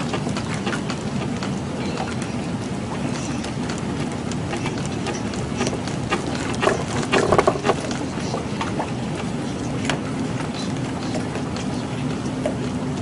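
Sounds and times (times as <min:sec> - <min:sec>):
steady noisy background: 0:00.0 - 0:13.0
loose fittings rattling and knocking: 0:04.7 - 0:08.0.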